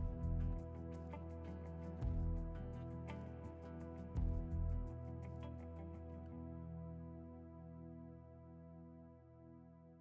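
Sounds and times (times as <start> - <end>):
deep bass note: 0.0 - 0.7, 2.0 - 2.8, 4.2 - 5.1
light ticking percussion: 0.0 - 6.0.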